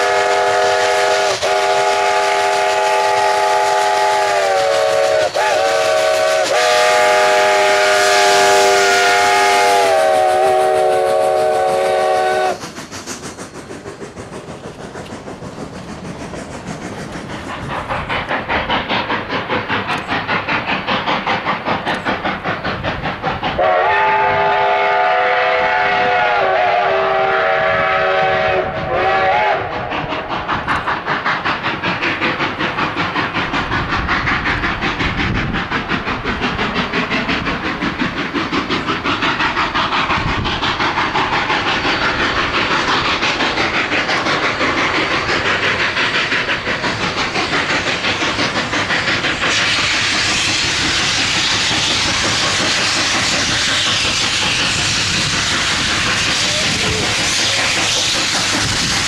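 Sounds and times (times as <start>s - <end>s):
steam locomotive chime whistle: 0.0s - 12.6s, 23.6s - 29.8s
steam engine exhaust chuffing: 0.0s - 59.0s.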